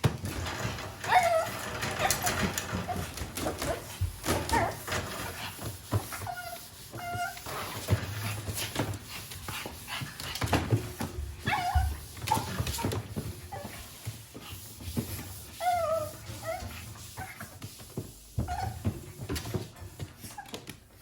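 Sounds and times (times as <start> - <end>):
puppy whimpering: 1.0 - 3.1, 6.2 - 7.9, 11.4 - 12.9, 15.6 - 16.7.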